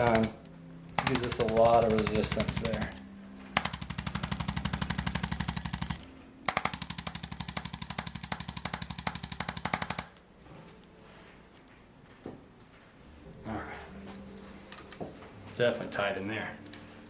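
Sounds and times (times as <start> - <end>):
adjusting instrument rapid clicks: 0.0 - 3.0, 3.6 - 10.2.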